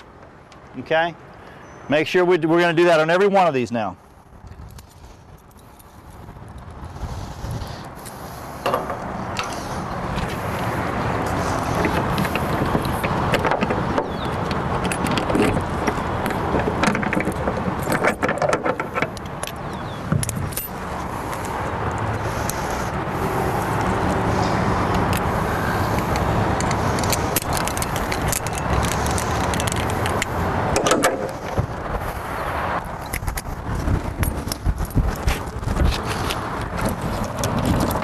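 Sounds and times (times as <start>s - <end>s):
metal carabiners clinking: 20.2s - 20.8s, 26.0s - 31.4s.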